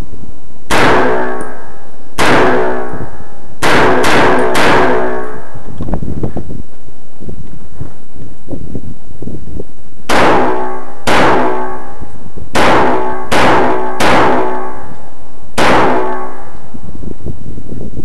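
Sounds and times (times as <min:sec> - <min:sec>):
gunshots: 0:00.7 - 0:03.0, 0:03.6 - 0:05.5, 0:10.1 - 0:11.9, 0:12.6 - 0:14.9, 0:15.6 - 0:16.5.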